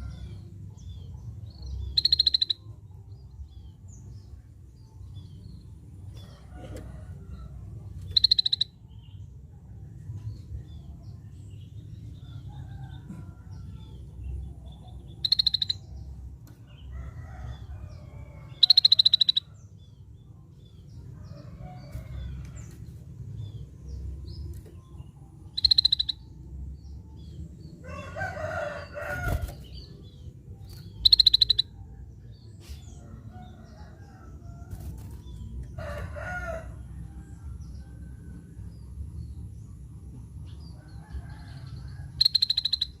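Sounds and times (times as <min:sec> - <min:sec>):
steady low rumble: 0:00.0 - 0:12.5, 0:19.2 - 0:27.9, 0:28.8 - 0:40.9
high pulsed bird calls: 0:02.0 - 0:02.6, 0:08.2 - 0:08.7, 0:15.2 - 0:15.8, 0:25.5 - 0:26.3, 0:30.9 - 0:31.8, 0:42.2 - 0:43.0.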